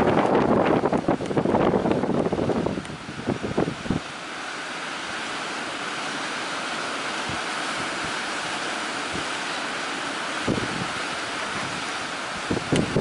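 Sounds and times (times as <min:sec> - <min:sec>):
wind buffeting microphone: 0:00.0 - 0:04.3, 0:10.3 - 0:13.0
sea surf rushing: 0:00.0 - 0:13.0.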